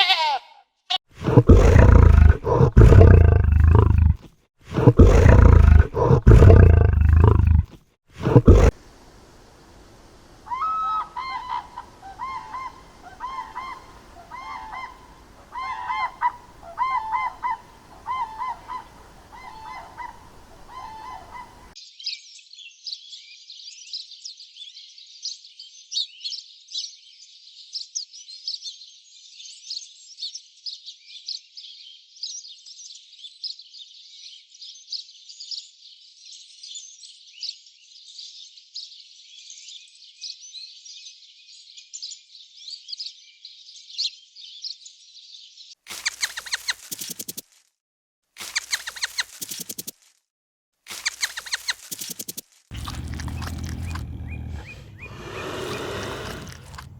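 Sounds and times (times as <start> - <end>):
animal roars: 1.2 - 8.7, 52.7 - 56.9
high-pitched chirping chorus: 51.0 - 56.9
honking animal calls: 52.7 - 56.9.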